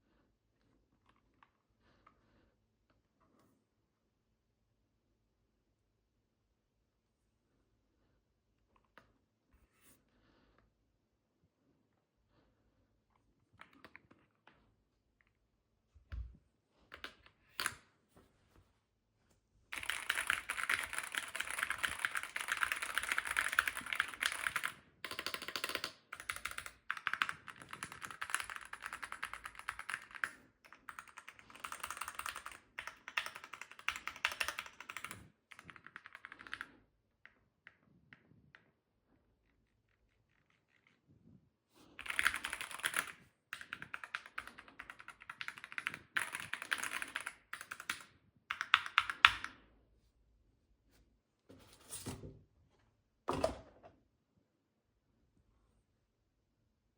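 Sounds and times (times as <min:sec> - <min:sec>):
keyboard typing: 0:19.7 - 0:36.7, 0:42.0 - 0:49.5.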